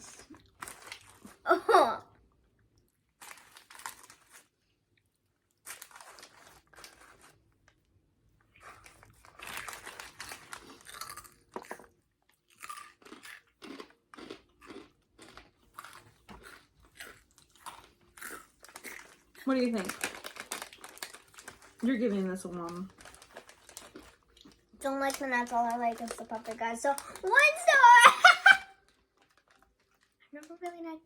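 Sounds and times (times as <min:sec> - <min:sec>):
crunchy snack chewing: 0:00.2 - 0:01.4, 0:03.2 - 0:04.6, 0:05.5 - 0:07.4, 0:08.5 - 0:21.8, 0:22.9 - 0:27.5.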